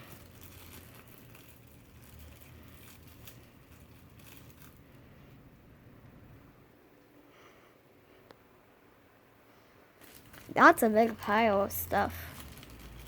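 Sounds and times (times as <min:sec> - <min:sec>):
plastic packaging crinkling: 0:00.0 - 0:05.4, 0:10.0 - 0:13.0
low steady hum: 0:00.0 - 0:13.0.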